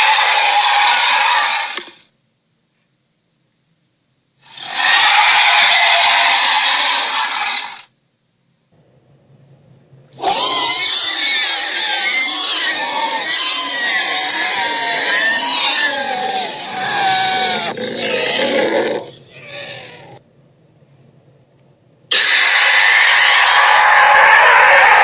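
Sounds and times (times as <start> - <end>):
monster roar: 0.0 - 2.0, 4.5 - 7.8, 10.2 - 20.2, 22.1 - 25.0.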